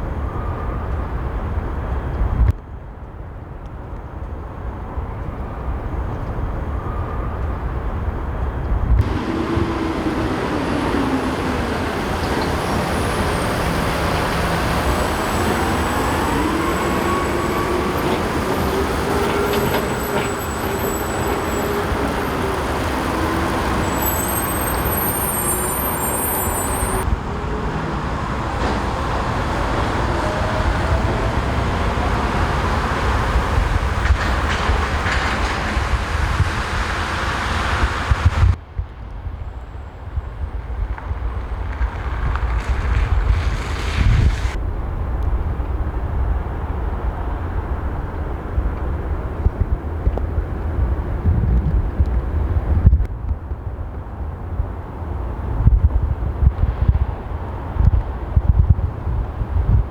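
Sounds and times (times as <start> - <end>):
low traffic rumble: 0.0 - 59.9
vehicles passing: 0.0 - 59.9.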